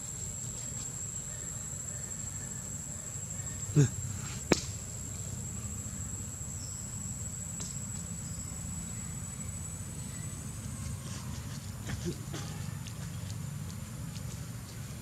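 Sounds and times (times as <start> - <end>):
high-pitched insect trill: 0.0 - 11.8.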